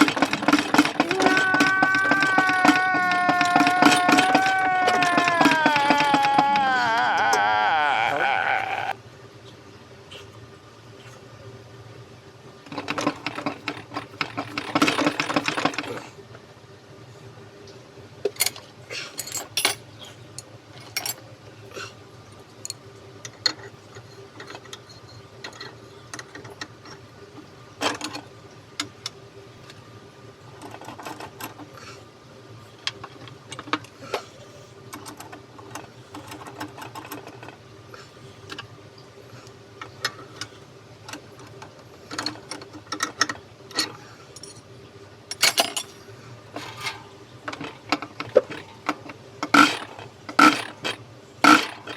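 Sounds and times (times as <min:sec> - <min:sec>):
metal parts and tools clinking: 0:00.0 - 0:06.8, 0:45.3 - 0:46.0.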